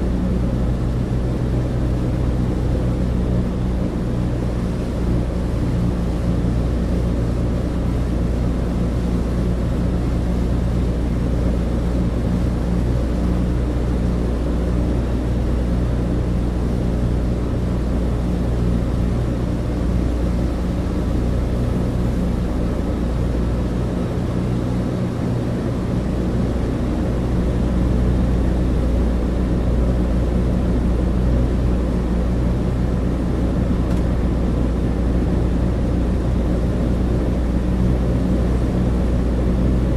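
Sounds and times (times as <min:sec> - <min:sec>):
low hum: 0:00.0 - 0:39.9
propeller engines droning: 0:00.0 - 0:39.9.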